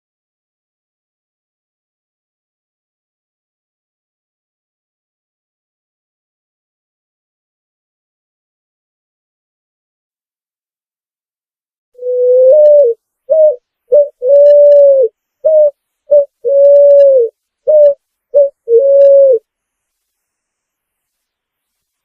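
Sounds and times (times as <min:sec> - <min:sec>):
pigeon cooing: 0:12.0 - 0:19.4.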